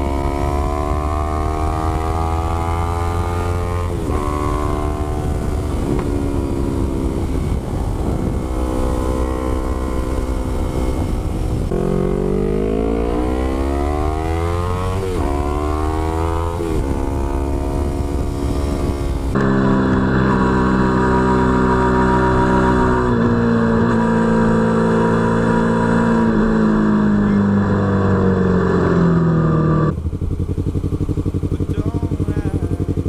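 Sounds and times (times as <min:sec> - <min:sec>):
motorcycle engine accelerating: 0:00.0 - 0:33.0.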